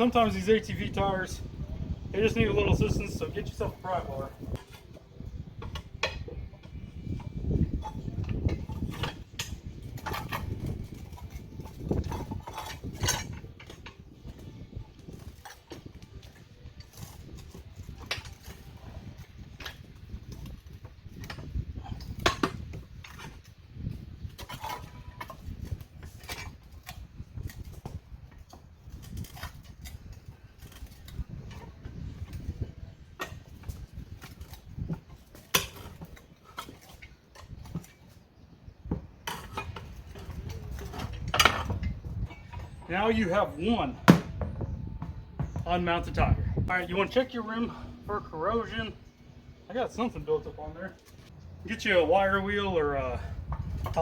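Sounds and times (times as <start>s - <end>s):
metal tools clanking: 2.2s - 23.6s, 24.2s - 38.2s, 39.2s - 44.0s.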